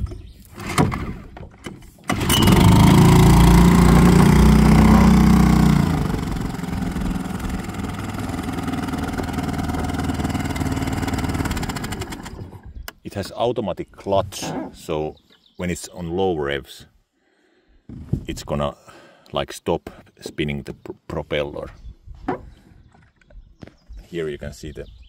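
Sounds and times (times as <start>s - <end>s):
outboard motor running: 2.1s - 12.8s.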